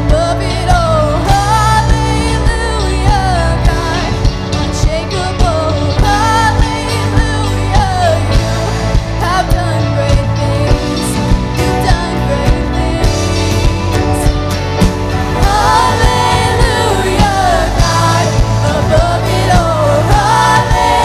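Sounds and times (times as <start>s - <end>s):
steady drum beat: 0.0s - 21.0s
band playing: 0.1s - 21.0s
person singing: 15.1s - 21.0s.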